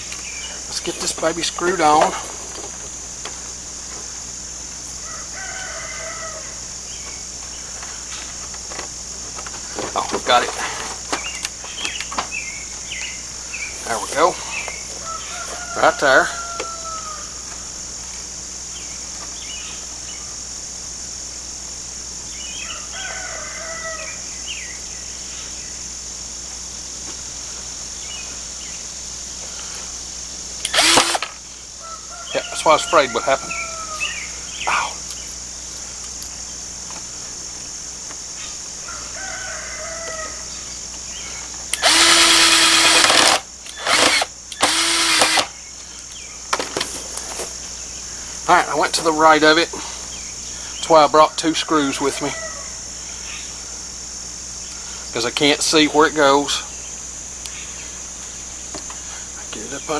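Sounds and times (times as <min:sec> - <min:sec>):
chickens calling: 0:00.0 - 0:20.0, 0:30.5 - 0:35.3, 0:38.2 - 0:46.5, 0:47.4 - 0:55.2
crickets chirring: 0:00.0 - 0:59.9
high insect drone: 0:00.0 - 0:59.9
rooster crowing: 0:05.0 - 0:07.0, 0:14.2 - 0:17.9, 0:22.5 - 0:24.6, 0:30.7 - 0:35.0, 0:38.7 - 0:41.2, 0:51.0 - 0:53.1.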